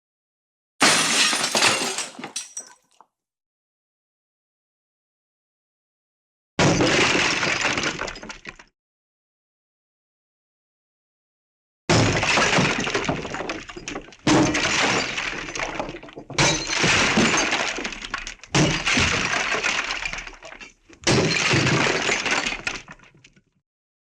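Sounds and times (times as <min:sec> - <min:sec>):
glass breaking: 0:00.8 - 0:02.9, 0:16.3 - 0:18.0.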